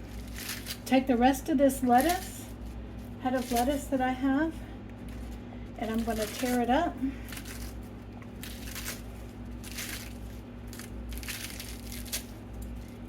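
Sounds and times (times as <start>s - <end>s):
steady low hum: 0.0s - 13.0s
lettuce being torn by hand: 7.2s - 13.0s.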